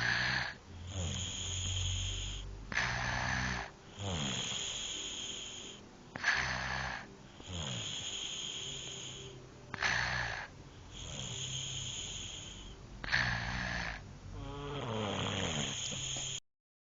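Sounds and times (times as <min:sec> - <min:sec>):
snoring: 0:00.0 - 0:16.4.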